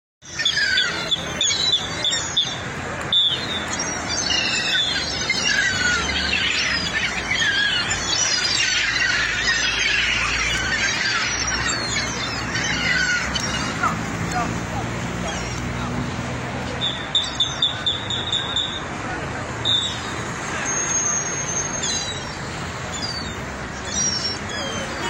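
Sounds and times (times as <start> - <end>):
birds chirping and squawking: 0.2 - 19.0, 19.6 - 25.0.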